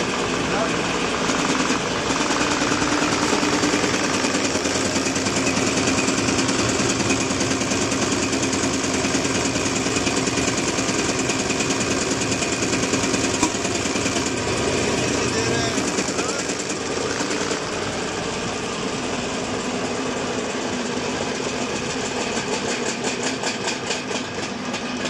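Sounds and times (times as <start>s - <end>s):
injection pump rattling: 0.0s - 19.8s.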